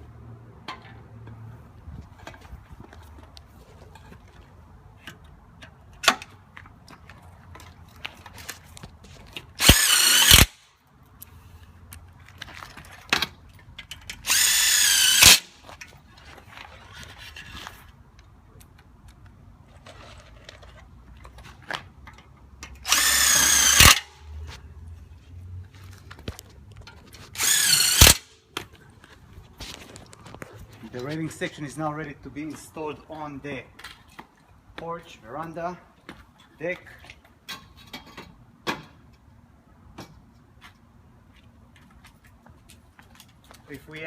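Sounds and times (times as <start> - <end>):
power drill driving screws: 9.6 - 10.6, 14.2 - 15.6, 22.8 - 24.2, 27.4 - 28.3.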